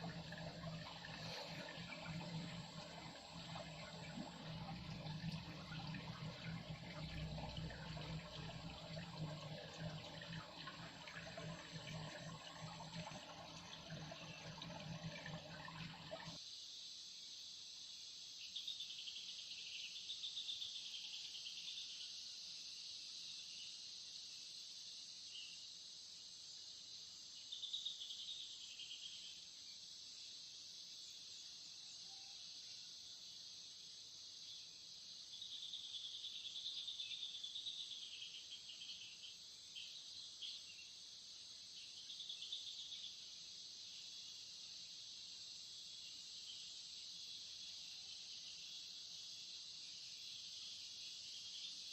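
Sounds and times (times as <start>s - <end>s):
insects chirping: 0.0s - 51.9s.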